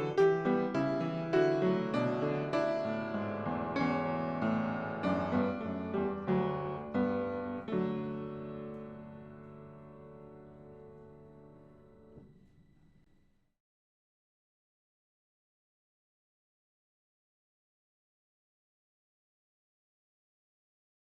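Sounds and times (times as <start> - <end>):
solo piano music: 0.0 - 12.3.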